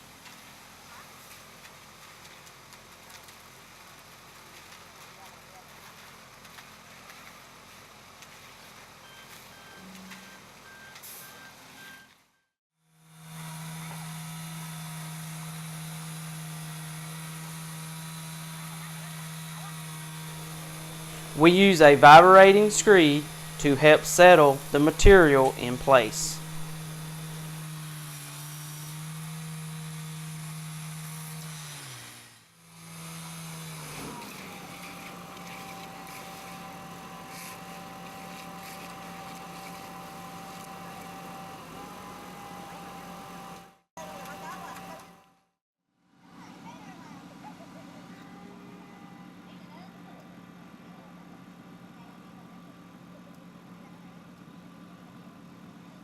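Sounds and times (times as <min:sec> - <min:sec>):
small gasoline engine running: 0:12.9 - 0:21.4, 0:26.4 - 0:45.3
concrete screed motor hum: 0:13.1 - 0:45.3
thin high whine: 0:20.4 - 0:27.6.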